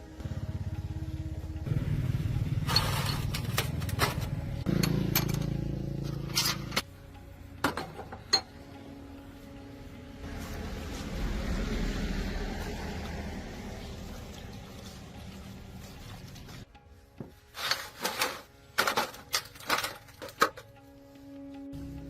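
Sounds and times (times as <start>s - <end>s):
engine pulsing hum: 0.0s - 16.8s, 20.7s - 22.0s
tools clinking on metal: 2.8s - 6.8s, 7.6s - 8.6s.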